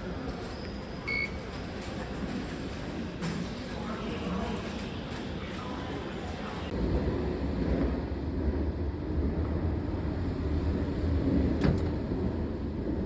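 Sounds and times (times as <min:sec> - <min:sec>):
steady low rumble: 0:06.7 - 0:13.0.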